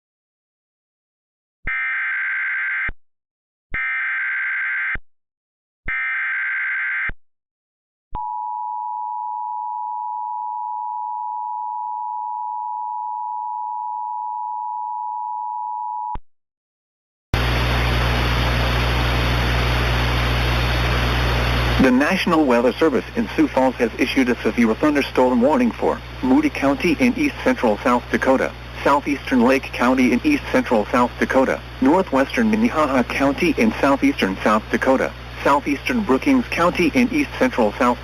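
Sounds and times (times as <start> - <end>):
rush of noise with low hum: 17.4 - 38.0.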